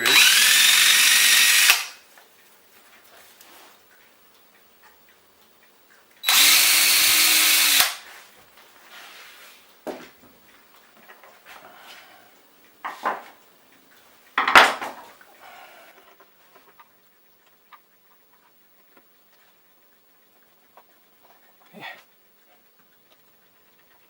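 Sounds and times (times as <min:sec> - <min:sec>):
power drill boring into wood: 0:00.0 - 0:02.0, 0:06.2 - 0:08.0.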